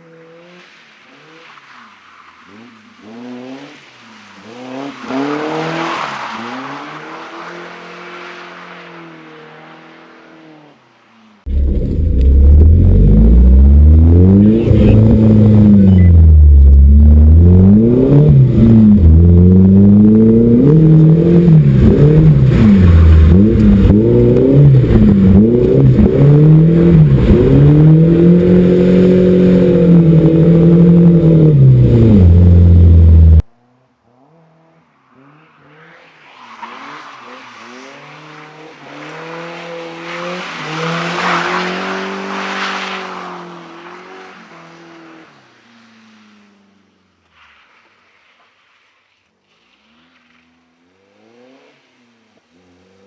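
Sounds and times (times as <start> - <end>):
tyres hissing on wet road: 0.0 - 10.7, 11.4 - 33.4, 35.1 - 53.0
car engine revving: 11.5 - 33.5.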